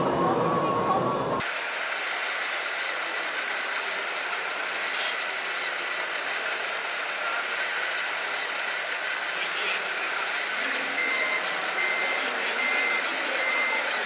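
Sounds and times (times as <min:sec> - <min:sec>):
faint high whine: 0:00.0 - 0:01.4
model machines running: 0:00.0 - 0:01.5.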